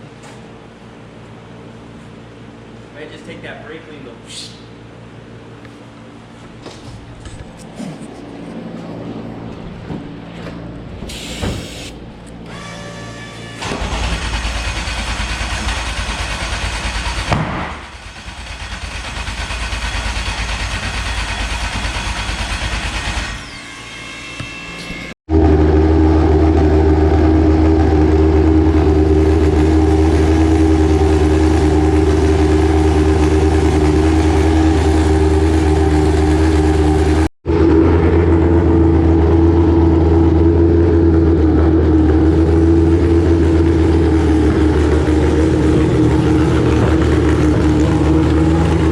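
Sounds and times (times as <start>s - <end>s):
car engine running: 25.3s - 48.9s.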